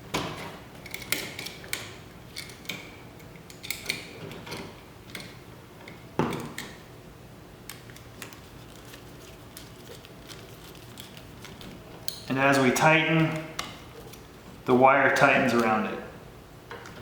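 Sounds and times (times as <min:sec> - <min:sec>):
hand tools clicking on wire: 0:07.7 - 0:14.3.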